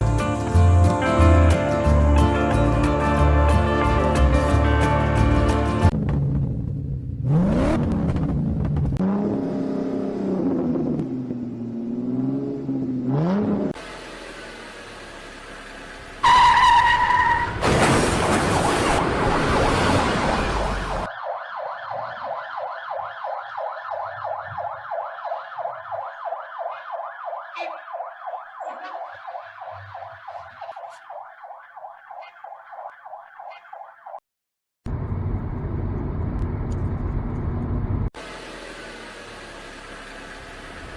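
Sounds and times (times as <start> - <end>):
fast-pulsing electronic siren: 19.2 - 34.2
wavering siren tone: 19.3 - 34.2.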